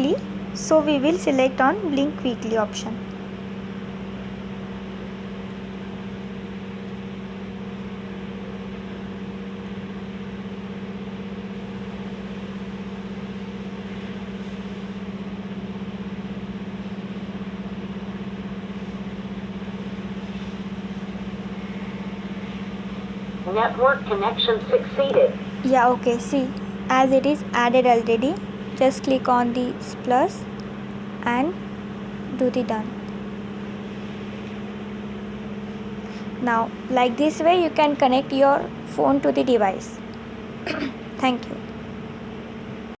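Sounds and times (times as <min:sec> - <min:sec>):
steady machine hum: 0:00.0 - 0:43.0.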